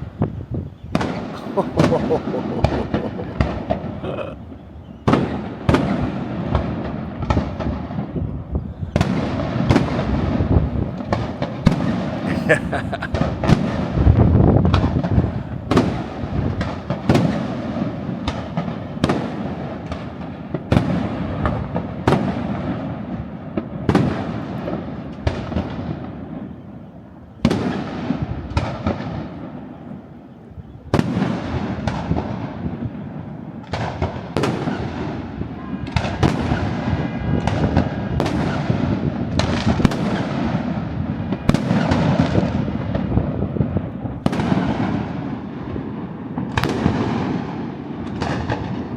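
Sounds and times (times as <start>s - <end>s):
firework booms with rolling echo: 36.0s - 48.9s.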